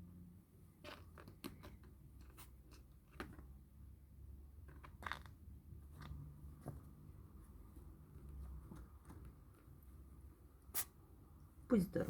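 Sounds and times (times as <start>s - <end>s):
kitten scratching and clicking: 0.8s - 3.6s, 4.6s - 6.4s.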